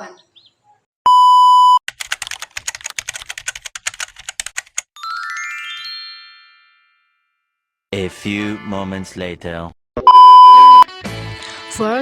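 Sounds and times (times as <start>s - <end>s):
loud steady beep: 1.1s - 1.8s, 10.1s - 10.8s
keyboard typing clicks: 1.9s - 4.8s.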